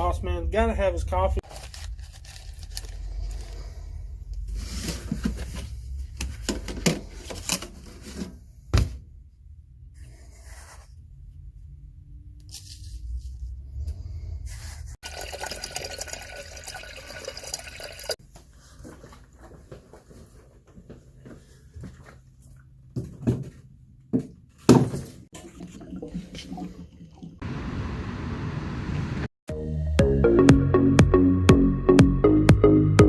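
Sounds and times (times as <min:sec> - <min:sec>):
water running into a pot: 0:15.0 - 0:18.2.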